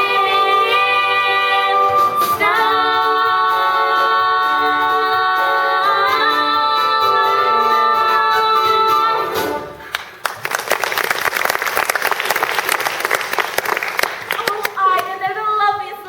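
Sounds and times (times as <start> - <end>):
women singing held notes: 0.0 - 9.7.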